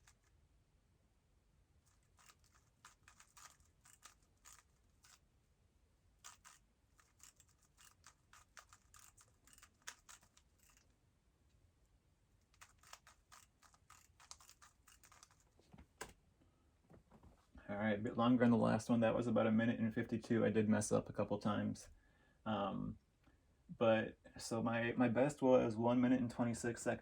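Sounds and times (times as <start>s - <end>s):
puzzle cube clicking: 2.0s - 5.2s, 6.2s - 10.9s, 12.5s - 15.4s.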